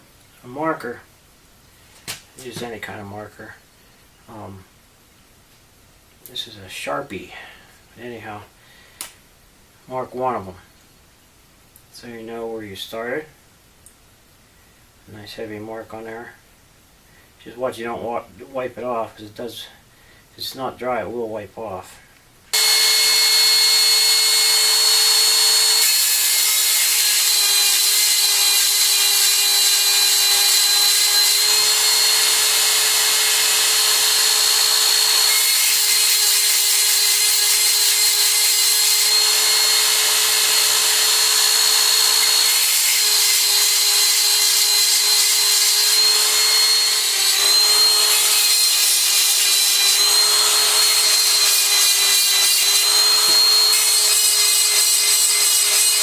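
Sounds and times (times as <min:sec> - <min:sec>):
rotary tool grinding chain: 0:22.6 - 0:56.0.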